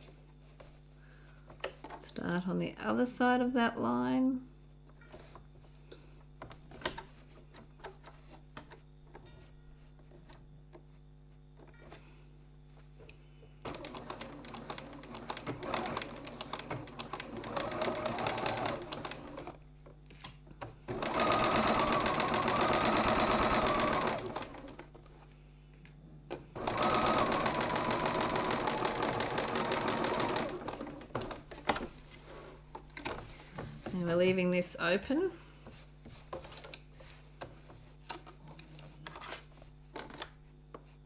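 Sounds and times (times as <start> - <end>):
sewing machine stitching: 13.7 - 19.6, 20.9 - 24.9, 26.6 - 31.7.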